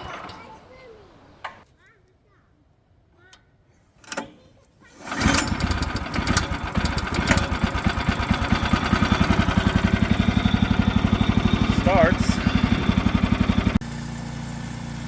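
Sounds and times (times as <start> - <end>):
small gasoline engine starting: 4.9 - 15.0.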